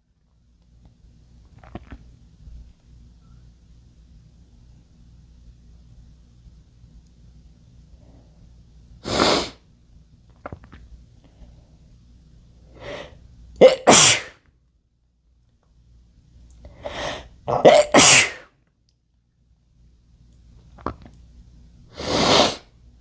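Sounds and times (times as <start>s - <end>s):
forceful burst of breath: 9.0s - 9.6s, 16.8s - 17.3s, 21.9s - 22.7s
man sneezing: 13.6s - 14.4s, 17.5s - 18.5s.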